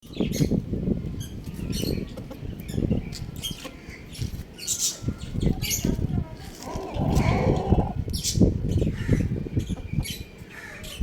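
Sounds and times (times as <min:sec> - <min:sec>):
chickens rustling and scuffling: 0:01.3 - 0:08.1
chicks cheeping: 0:06.6 - 0:11.0.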